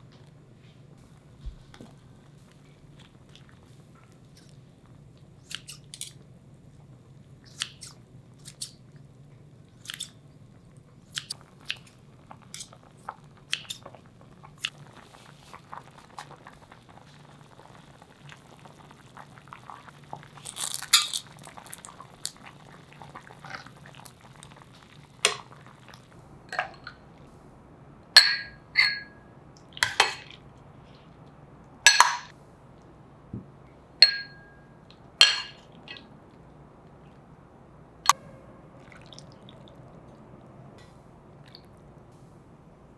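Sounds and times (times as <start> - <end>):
utensils and dishes clicking: 20.5 - 21.4, 29.8 - 30.3
dishes clinking: 26.5 - 27.0, 28.2 - 29.2, 29.8 - 30.4, 31.9 - 32.3, 34.0 - 36.0.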